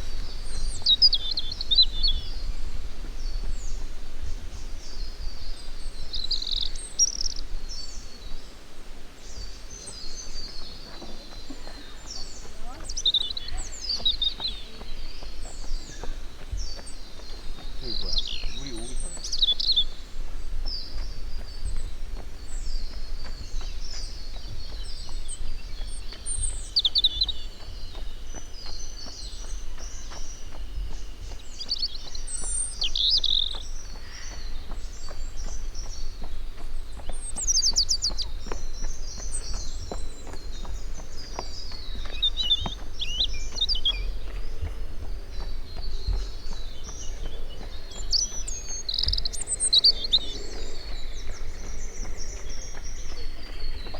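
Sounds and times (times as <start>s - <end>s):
small birds chirping and singing: 0.0s - 53.9s
steady low rumble: 11.6s - 53.9s.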